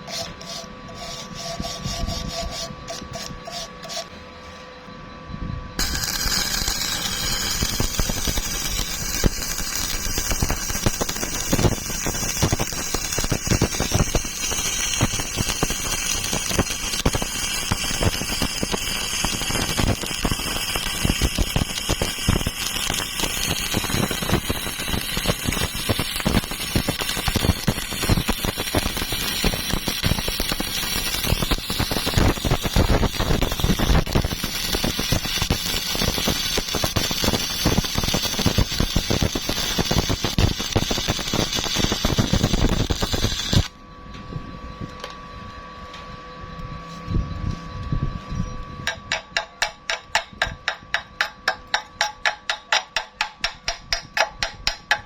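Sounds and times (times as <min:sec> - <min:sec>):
welding arc crackling: 0:05.8 - 0:43.7, 0:48.9 - 0:55.0.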